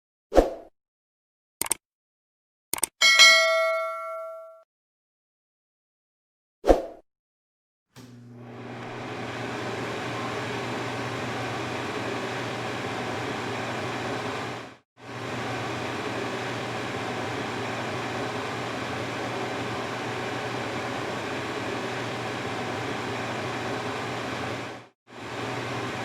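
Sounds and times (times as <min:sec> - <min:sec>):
electric fan running: 0:08.0 - 0:26.0.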